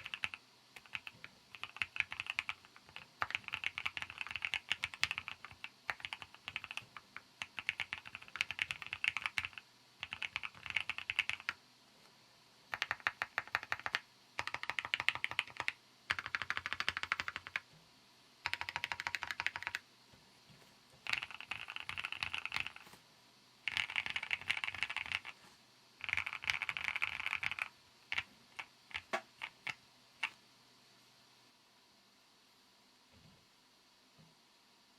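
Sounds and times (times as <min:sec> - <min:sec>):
mechanical keyboard typing: 0:00.0 - 0:11.6, 0:12.7 - 0:17.7, 0:18.4 - 0:19.8, 0:21.0 - 0:23.0, 0:23.7 - 0:25.4, 0:26.0 - 0:30.4.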